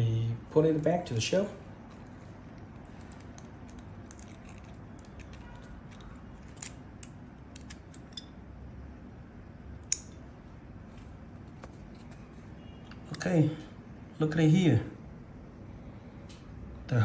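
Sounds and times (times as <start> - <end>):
small metal parts clicking: 2.0 - 8.4.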